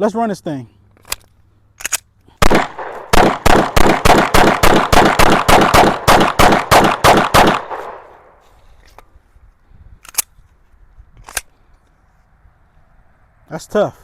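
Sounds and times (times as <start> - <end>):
pistol shots echoing: 2.4 - 8.2.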